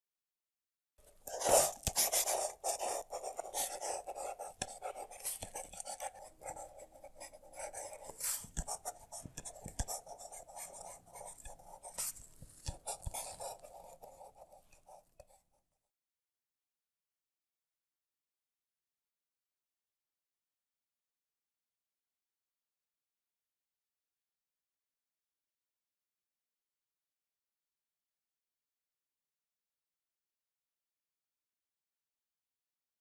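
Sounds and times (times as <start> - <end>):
pen scratching on paper: 1.0 - 15.6.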